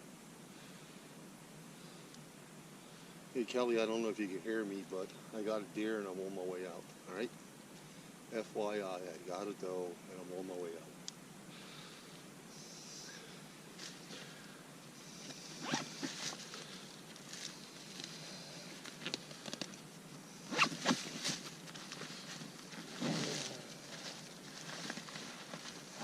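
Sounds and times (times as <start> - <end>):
zipper-like scrapes: 15.6 - 16.3, 20.5 - 21.1, 22.8 - 23.6.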